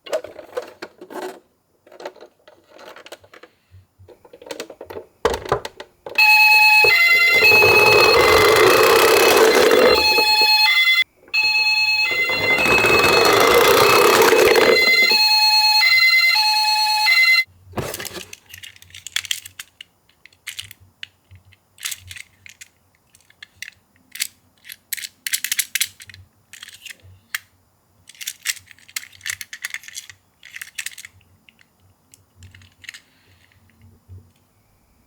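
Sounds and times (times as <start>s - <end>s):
small plastic parts rattling: 0.0s - 6.2s, 17.8s - 33.8s
toy siren alternating tones: 6.2s - 17.5s.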